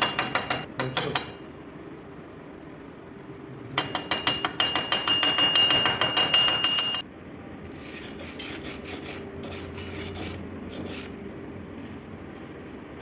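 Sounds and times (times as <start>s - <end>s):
ringing blows on steel: 3.8s - 7.0s.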